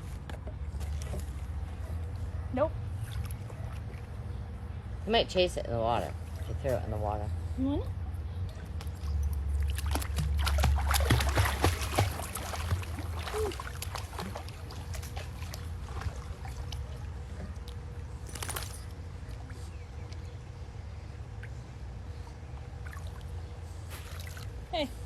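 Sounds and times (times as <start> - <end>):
steady low hum: 0.0 - 25.0
water splashing in a pool: 8.5 - 19.6, 22.8 - 24.7.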